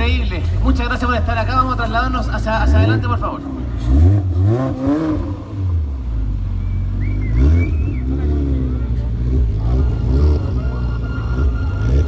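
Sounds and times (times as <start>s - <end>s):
car engine idling: 0.0s - 12.0s
nearby voices: 8.0s - 12.0s.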